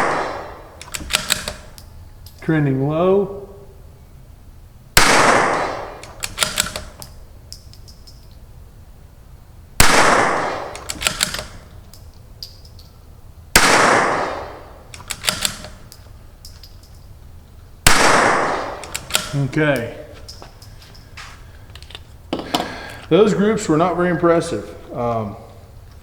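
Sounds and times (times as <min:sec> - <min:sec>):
rifle shots with ringing echo: 0:00.0 - 0:01.8, 0:05.0 - 0:07.0, 0:09.8 - 0:11.7, 0:13.5 - 0:15.9, 0:17.8 - 0:19.6
rifle bolt clicking: 0:00.8 - 0:02.4, 0:06.0 - 0:08.2, 0:10.7 - 0:12.9, 0:14.9 - 0:17.0, 0:18.1 - 0:20.7.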